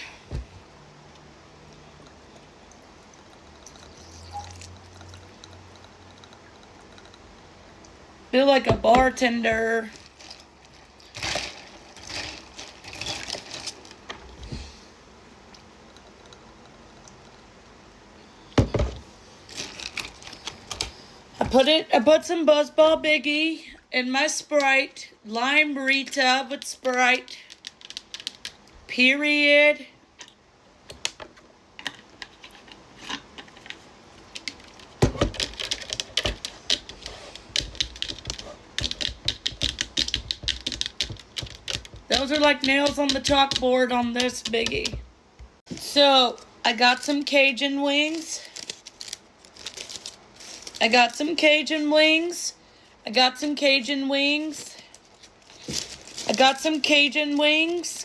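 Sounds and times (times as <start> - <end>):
rustling and clinking containers: 9.9 - 14.4, 55.0 - 58.0.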